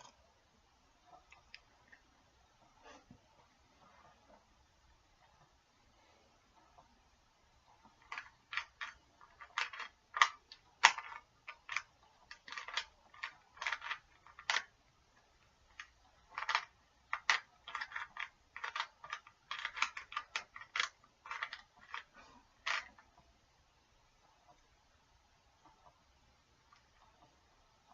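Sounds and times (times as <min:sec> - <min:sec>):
puzzle cube twisting clicks: 0:08.0 - 0:14.7, 0:15.8 - 0:23.0.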